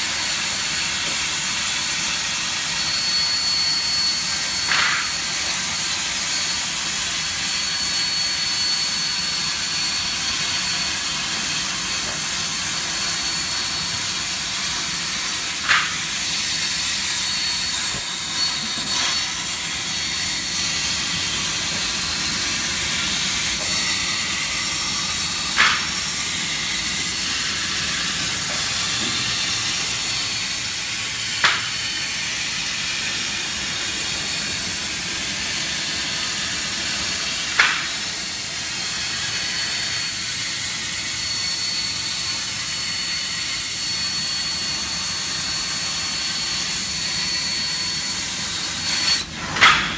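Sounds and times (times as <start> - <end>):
plasma arc hissing: 7.6 - 33.5.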